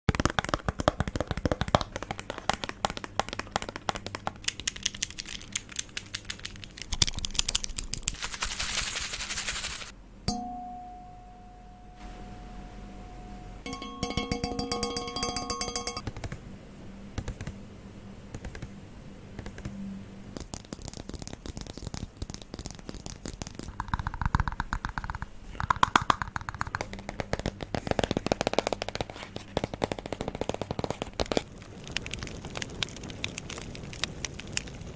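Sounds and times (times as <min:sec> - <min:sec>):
crisp tapping and clicking: 0:00.1 - 0:09.9, 0:19.4 - 0:34.9
ringing tones: 0:10.3 - 0:16.0.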